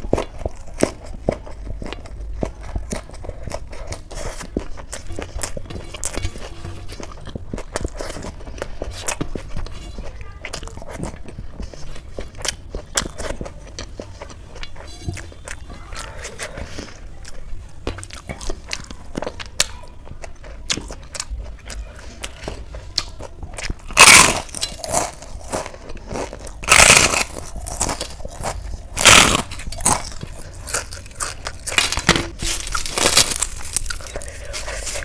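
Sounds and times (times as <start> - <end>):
chewing: 0.0 - 35.0
crackly mouth sounds: 0.0 - 35.0
crunchy bites: 22.4 - 35.0.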